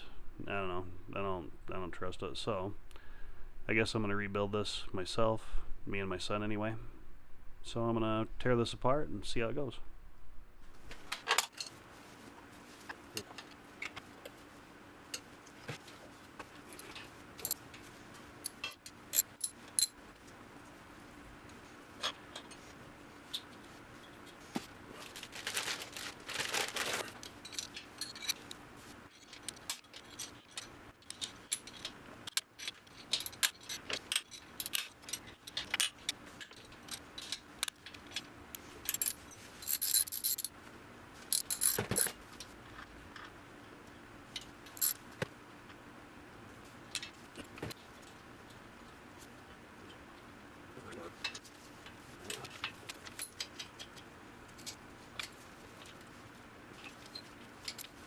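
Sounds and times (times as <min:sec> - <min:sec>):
faint steady hum: 0:00.0 - 0:58.0
metal tools clinking and rattling: 0:18.5 - 0:20.0, 0:26.4 - 0:28.4, 0:38.8 - 0:40.5, 0:41.3 - 0:42.2, 0:44.8 - 0:45.0.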